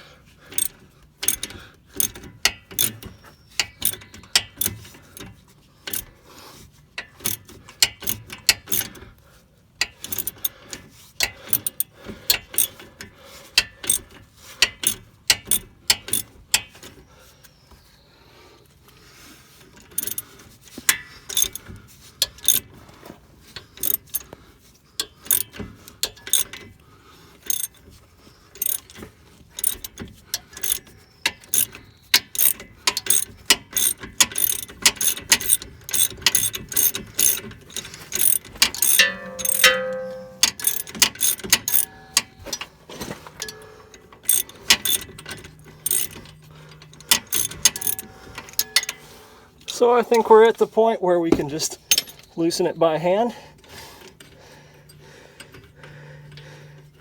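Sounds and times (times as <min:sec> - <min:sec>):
socket ratchet clicking: 0:00.5 - 0:05.3, 0:05.9 - 0:06.1, 0:07.0 - 0:09.0, 0:09.8 - 0:12.8, 0:13.6 - 0:16.8, 0:19.8 - 0:20.3, 0:20.9 - 0:22.6, 0:23.7 - 0:24.3, 0:25.0 - 0:26.6, 0:27.4 - 0:27.8, 0:28.6 - 0:42.4, 0:43.4 - 0:49.1.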